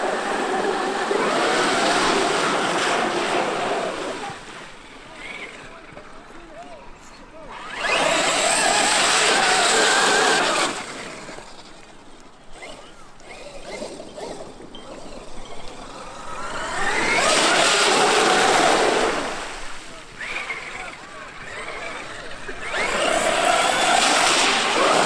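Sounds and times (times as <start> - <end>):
electric motor whine: 7.3 - 25.0.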